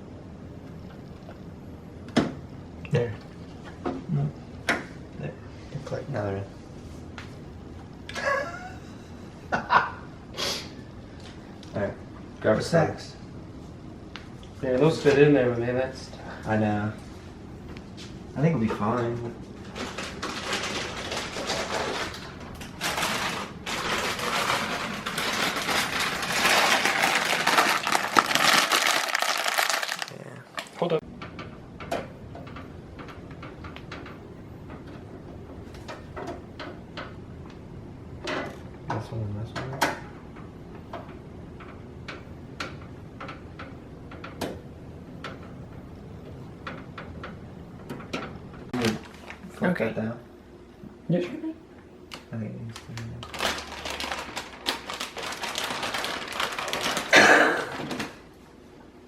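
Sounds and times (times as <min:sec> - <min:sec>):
low background hum: 0:00.0 - 0:59.0
packaging rustling: 0:19.7 - 0:30.9, 0:52.8 - 0:58.2.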